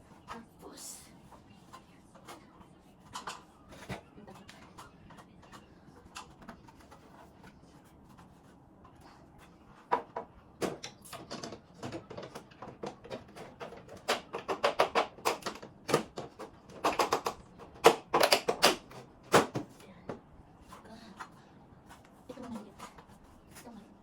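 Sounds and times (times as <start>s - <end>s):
sharp plastic clicks and clacks: 9.9s - 19.6s.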